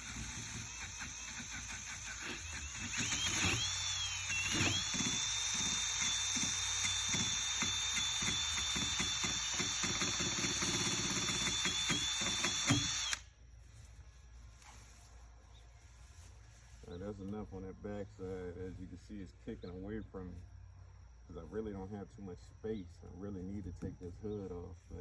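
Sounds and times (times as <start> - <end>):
power sander grinding metal: 0.0 - 13.2.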